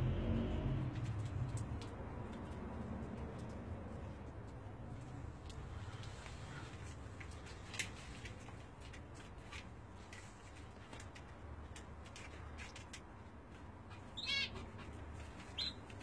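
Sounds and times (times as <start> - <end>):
light clicks and taps: 1.0 - 13.7.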